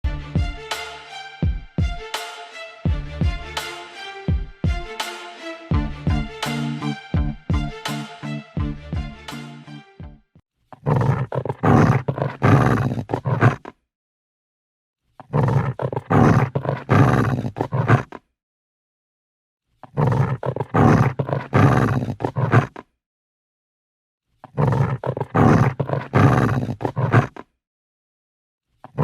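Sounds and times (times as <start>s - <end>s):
plucked musical intro: 0.1s - 10.2s
dog growling: 10.8s - 13.7s, 15.2s - 18.2s, 19.9s - 22.8s, 24.5s - 27.4s.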